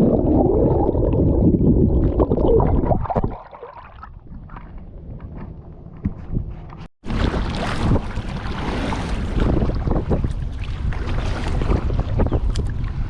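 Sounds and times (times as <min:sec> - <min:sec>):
water sloshing and paddling: 0:00.0 - 0:13.0
wind on microphone: 0:04.2 - 0:13.0.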